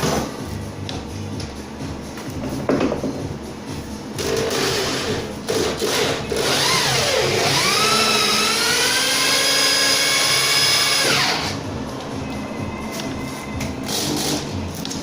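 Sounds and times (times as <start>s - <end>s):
electric drill motor whining: 4.5s - 11.6s.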